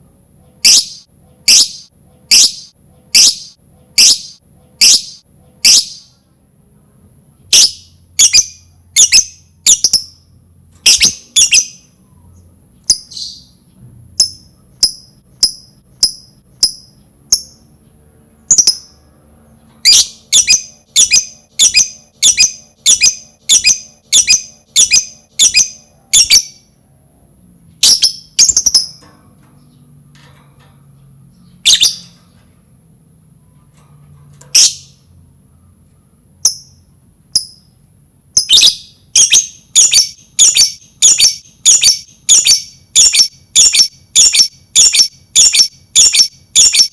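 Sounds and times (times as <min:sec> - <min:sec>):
lovebird shrill chirps: 0:00.6 - 0:06.1, 0:07.5 - 0:10.2, 0:10.8 - 0:11.9, 0:19.8 - 0:26.6, 0:27.8 - 0:29.0, 0:31.6 - 0:32.2, 0:38.4 - 0:46.9.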